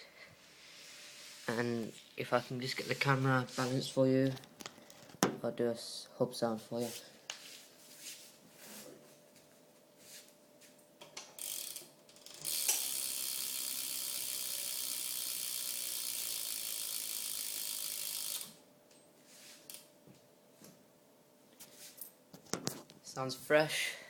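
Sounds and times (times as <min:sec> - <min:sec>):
bicycle hub ratcheting clicks: 0:11.2 - 0:18.6.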